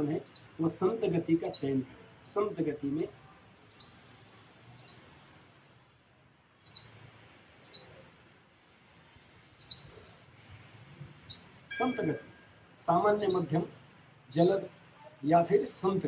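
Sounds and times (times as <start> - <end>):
faint background hiss: 0.0 - 16.0
small bird chirping: 0.2 - 0.6, 3.7 - 5.2, 6.6 - 7.0, 7.6 - 8.0, 8.7 - 10.0, 11.1 - 12.4.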